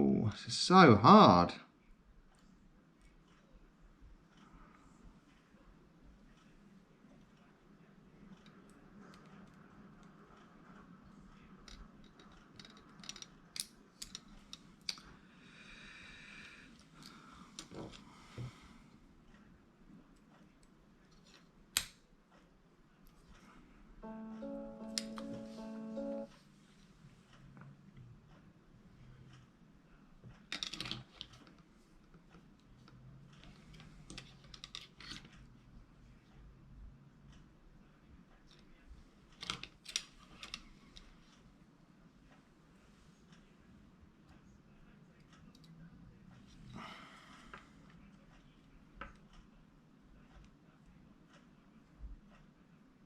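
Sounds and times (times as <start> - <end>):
small plastic clicks: 11.6 - 15.1
light clicks and taps of parts: 11.6 - 15.2, 39.3 - 41.4, 45.1 - 46.7.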